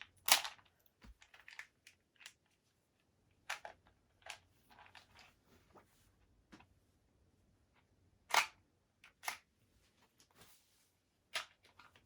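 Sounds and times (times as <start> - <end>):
plastic clicks and rustles: 0.0 - 2.6.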